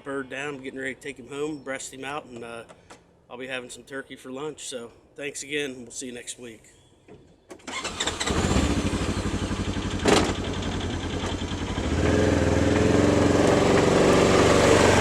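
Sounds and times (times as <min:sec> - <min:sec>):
vehicle engine running: 0:08.6 - 0:15.0.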